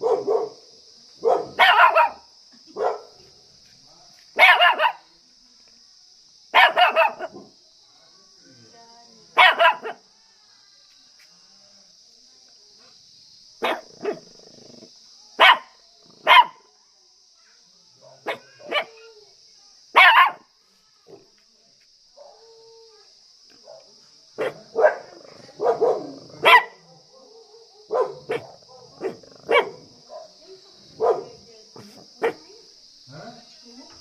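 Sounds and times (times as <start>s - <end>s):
small dog barking: 0.0s - 0.6s, 1.2s - 3.2s, 4.4s - 5.1s, 6.5s - 7.5s, 9.4s - 10.0s, 13.6s - 14.3s, 15.4s - 16.7s, 18.0s - 19.1s, 19.9s - 20.5s, 23.6s - 30.4s, 31.0s - 32.5s.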